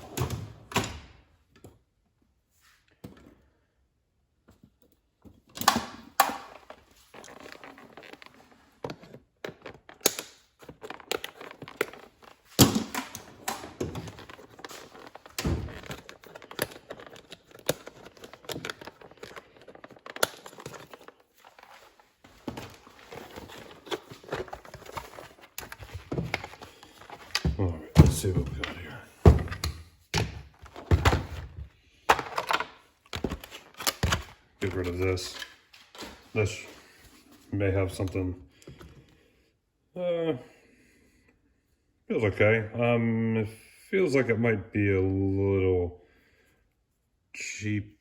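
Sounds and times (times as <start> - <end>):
packaging crinkling: 9.5 - 28.9, 32.1 - 36.1
plastic case knocks and clatter: 10.6 - 21.1, 22.4 - 34.8.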